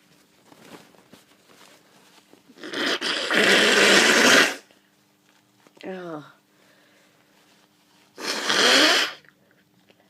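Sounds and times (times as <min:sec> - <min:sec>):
person blowing nose: 0:02.6 - 0:04.7, 0:08.1 - 0:09.3.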